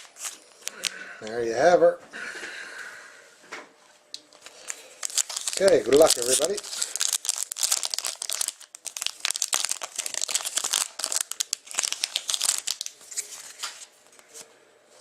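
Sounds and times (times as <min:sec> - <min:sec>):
foil wrapper crinkling and tearing: 0:04.3 - 0:13.8.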